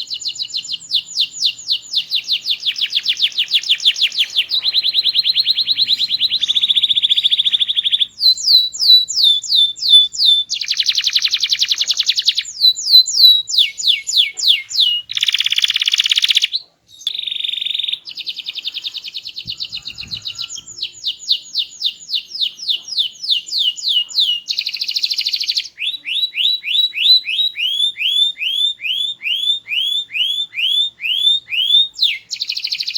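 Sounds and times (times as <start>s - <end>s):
canary singing: 0.0s - 32.9s.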